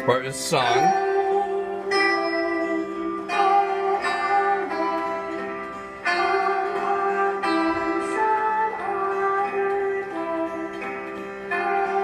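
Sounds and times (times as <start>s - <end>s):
children's song accompaniment: 0.5s - 12.0s.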